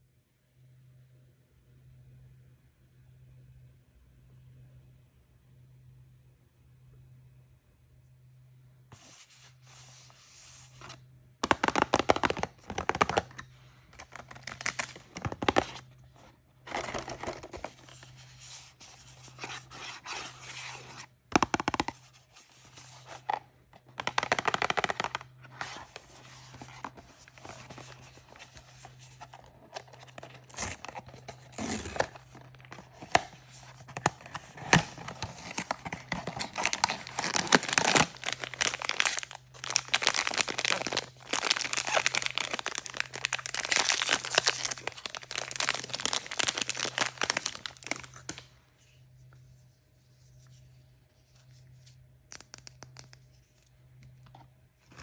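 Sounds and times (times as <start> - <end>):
faint low hum: 0.0 - 55.0
packaging tearing and crinkling: 11.4 - 15.9, 16.7 - 48.4.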